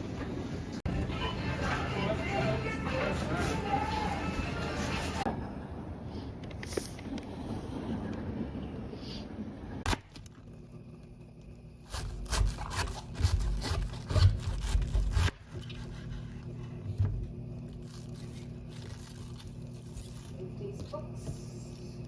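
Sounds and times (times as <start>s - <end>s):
steady background noise: 0.0s - 11.5s.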